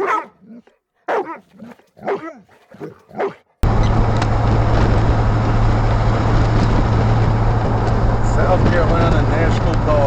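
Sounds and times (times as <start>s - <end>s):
dog barking: 0.0s - 3.5s
vehicle road noise: 3.6s - 10.0s.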